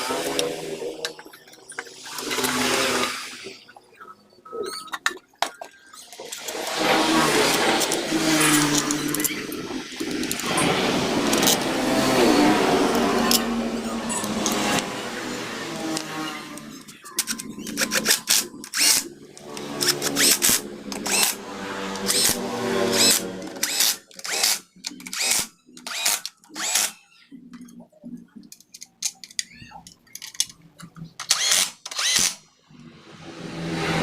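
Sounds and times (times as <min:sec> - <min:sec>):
power tool bursts: 0:18.0 - 0:27.0, 0:31.3 - 0:32.4.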